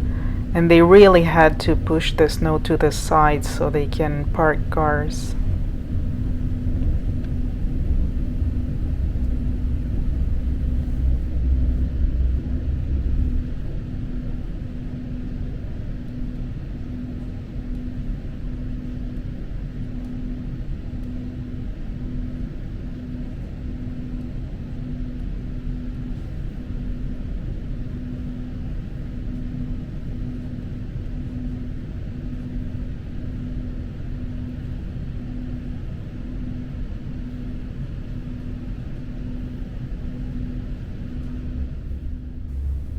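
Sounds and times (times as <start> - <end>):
train wheels rumbling on rails: 0.0 - 14.4, 41.1 - 42.9
faint pulsing hum: 0.0 - 42.9.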